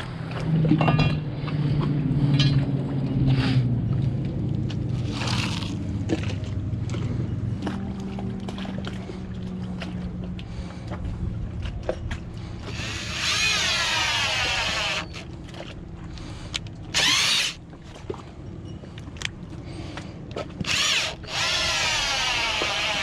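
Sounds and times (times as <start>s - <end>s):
power drill driving screws: 12.7s - 15.2s, 16.9s - 17.6s, 20.6s - 23.0s.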